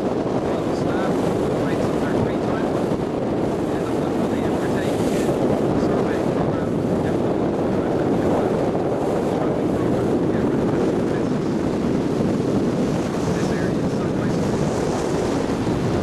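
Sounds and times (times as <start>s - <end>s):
boat engine noise: 0.0s - 16.0s
water rushing past hull: 0.0s - 16.0s
wind buffeting microphone: 0.0s - 16.0s.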